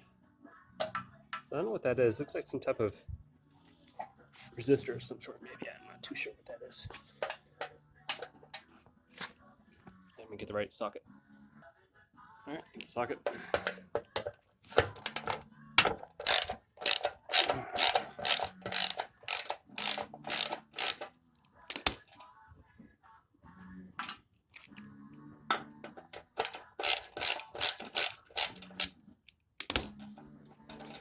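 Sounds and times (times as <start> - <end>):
socket ratchet clicking: 7.2 - 8.6, 13.3 - 21.1, 21.7 - 22.2, 25.5 - 28.9, 29.6 - 31.0.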